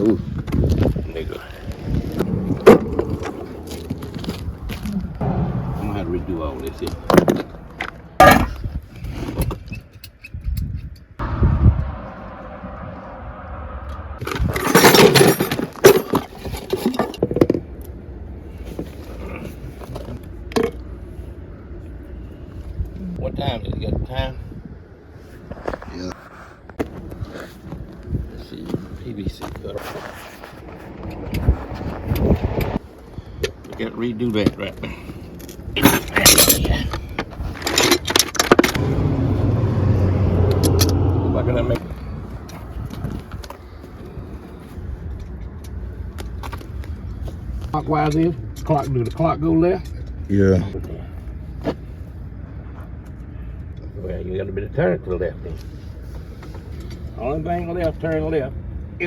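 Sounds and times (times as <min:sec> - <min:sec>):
vehicle engine humming: 0:00.4 - 0:09.0, 0:11.2 - 0:14.2, 0:38.5 - 0:47.7
hard objects clattering and clinking: 0:14.2 - 0:17.6.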